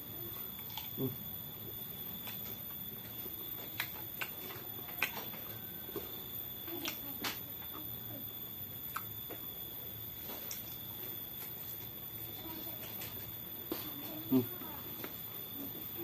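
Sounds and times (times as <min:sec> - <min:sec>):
person chewing food: 0:00.3 - 0:07.0.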